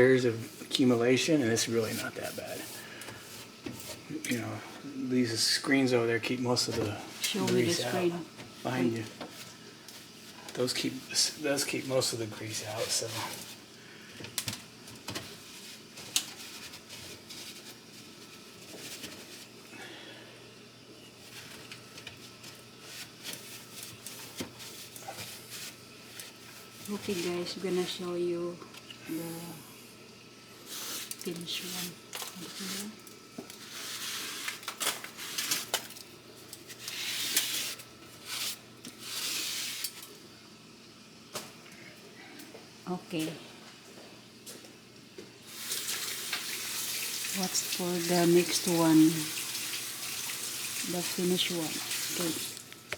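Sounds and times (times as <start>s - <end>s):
soft rubbing and scraping: 0.4s - 4.1s, 6.6s - 13.7s
rubbing or scraping noise: 36.7s - 39.9s.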